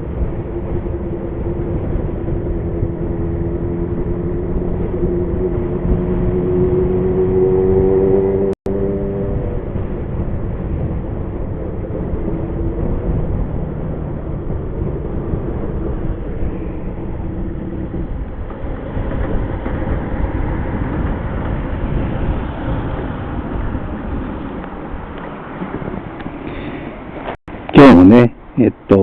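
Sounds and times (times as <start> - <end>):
wind and road noise: 0.0 - 29.0
motorcycle engine running: 0.2 - 18.2.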